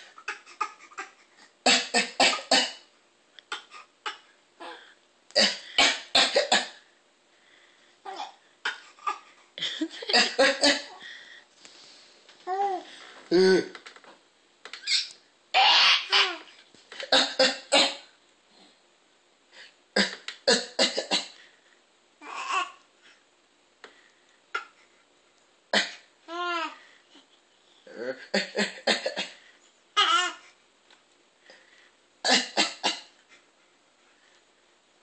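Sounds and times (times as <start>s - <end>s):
harsh coughing: 1.7s - 2.8s, 5.4s - 6.8s, 8.7s - 11.0s, 17.0s - 18.1s, 28.2s - 29.4s, 32.2s - 33.1s
person laughing: 9.6s - 11.0s.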